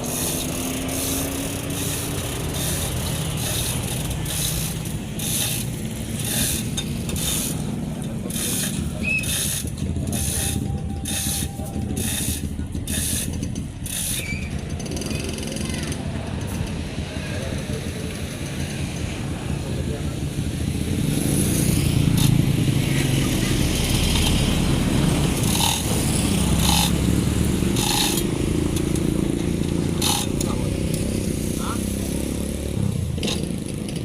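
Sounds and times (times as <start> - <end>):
metal ratchet clicking: 0.0 - 16.8, 25.3 - 31.1.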